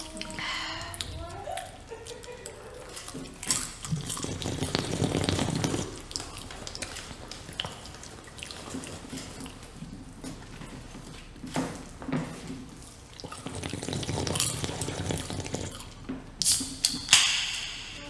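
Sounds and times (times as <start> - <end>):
water splashing and dripping: 0.0 - 18.0
dishes clinking: 16.0 - 18.0.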